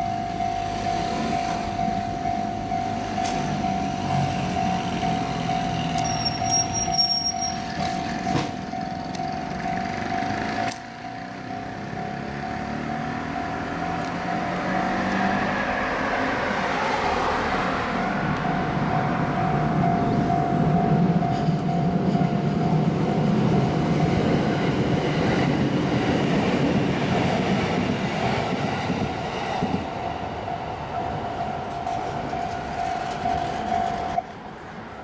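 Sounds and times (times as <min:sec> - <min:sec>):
level crossing alarm ringing: 0:00.0 - 0:16.7, 0:17.6 - 0:24.4
rail and traffic noise: 0:00.0 - 0:35.0
train approaching: 0:00.0 - 0:35.0
high whistle-like tone: 0:06.0 - 0:07.6.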